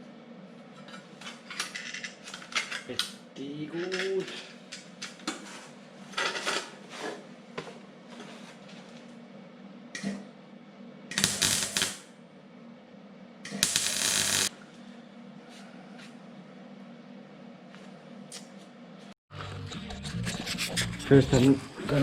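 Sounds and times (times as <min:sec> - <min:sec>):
loud harsh bursts: 0:13.6 - 0:14.5.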